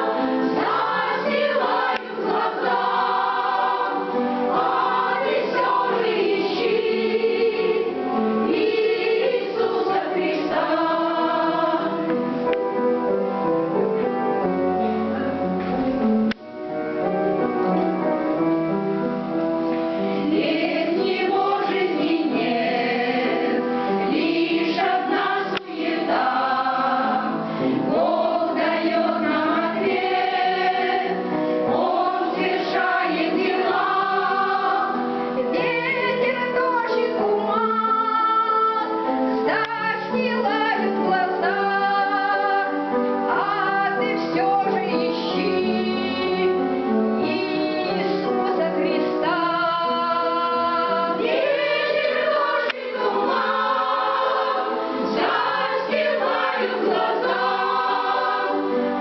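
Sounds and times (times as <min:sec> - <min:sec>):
church choir singing: 0:00.0 - 0:13.2, 0:19.1 - 0:59.0.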